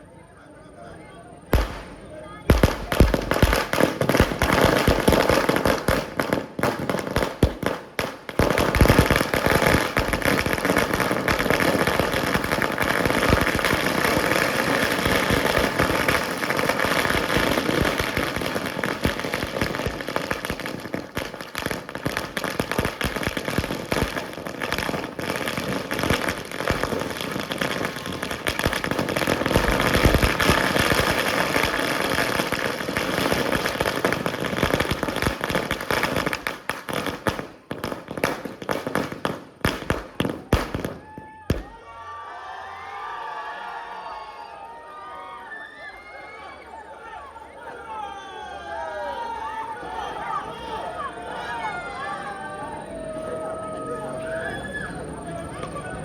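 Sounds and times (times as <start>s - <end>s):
fireworks crackling and banging: 1.5s - 41.8s.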